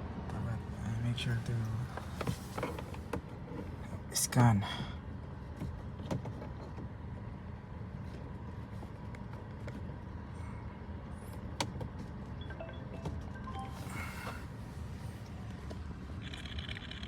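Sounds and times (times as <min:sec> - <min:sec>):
faint short beeps: 0:12.4 - 0:14.4.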